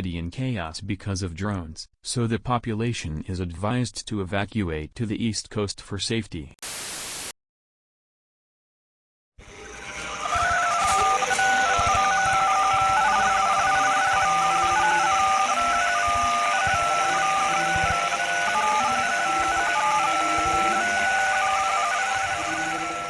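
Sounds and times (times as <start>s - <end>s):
static hiss: 6.6s - 7.3s.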